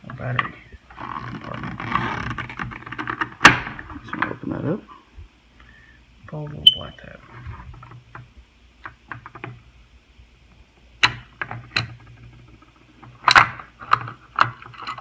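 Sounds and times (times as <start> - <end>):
plastic clicks and knocks: 7.8 - 9.6, 11.0 - 15.0.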